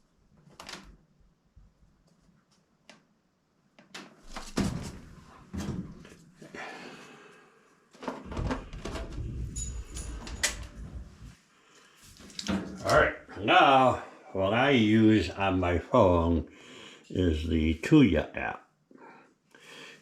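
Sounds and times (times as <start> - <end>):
knocks and clunks of handling: 7.9 - 10.8
low rumbling: 8.3 - 11.4.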